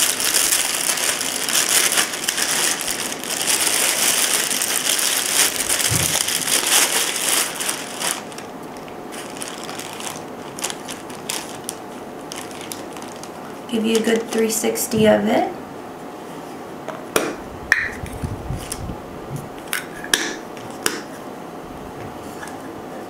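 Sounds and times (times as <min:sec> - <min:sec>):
plastic packaging crinkling: 0:00.0 - 0:14.6.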